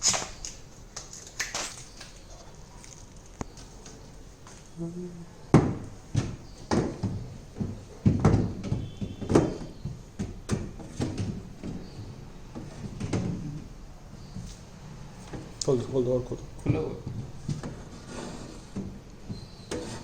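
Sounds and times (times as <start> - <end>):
handling knocks and thumps: 5.5 - 14.6, 16.6 - 17.9.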